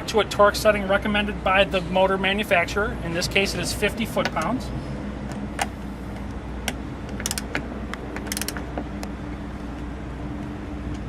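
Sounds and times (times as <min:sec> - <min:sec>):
steady low hum: 0:00.0 - 0:11.0
torque wrench ratcheting clicks: 0:07.1 - 0:07.6, 0:08.2 - 0:08.7.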